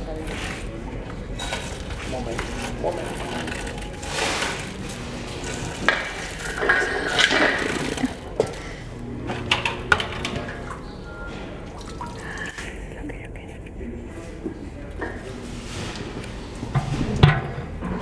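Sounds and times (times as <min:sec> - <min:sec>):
wet vacuum sucking water: 0:00.0 - 0:13.4
nozzle knocks and clatter: 0:00.2 - 0:10.9.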